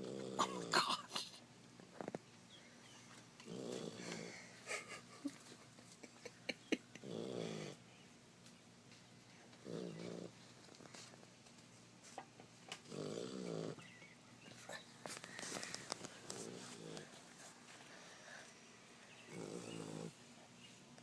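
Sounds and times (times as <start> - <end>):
bear snoring: 0.0 - 0.8, 3.4 - 4.5, 7.0 - 7.8, 9.6 - 10.4, 12.8 - 13.9, 16.2 - 17.2, 19.2 - 20.2.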